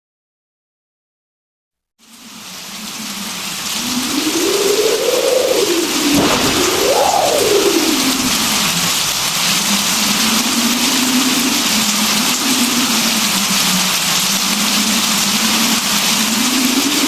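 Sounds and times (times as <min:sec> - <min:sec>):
steady rain: 0:02.0 - 0:17.0
low wavering hum: 0:06.0 - 0:12.0.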